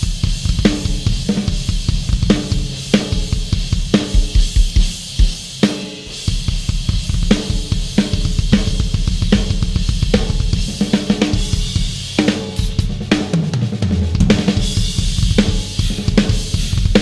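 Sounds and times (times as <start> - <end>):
bass drum: 0.0 - 5.6, 6.2 - 17.0
snare drum: 3.9 - 6.0
cymbals: 14.3 - 17.0.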